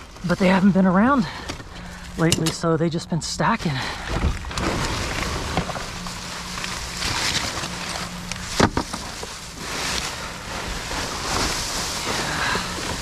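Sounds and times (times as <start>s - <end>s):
faint steady hum: 0.0s - 13.0s
rustling in a dumpster: 3.5s - 13.0s.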